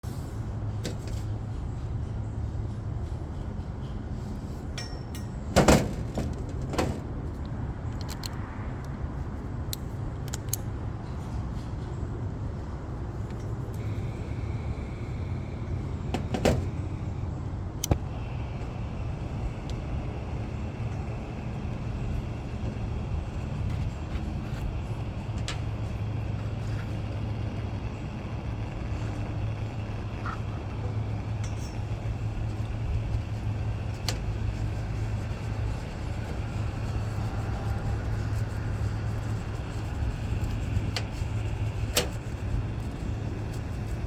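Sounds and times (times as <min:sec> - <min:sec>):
steady low rumble: 0:00.0 - 0:44.0
sharp metallic clinks and knocks: 0:04.7 - 0:06.1.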